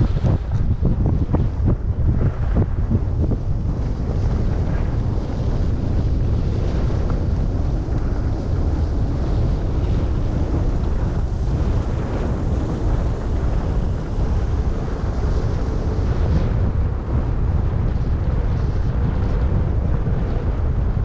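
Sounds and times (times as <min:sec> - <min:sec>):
wind rushing over microphone: 0:00.0 - 0:21.0.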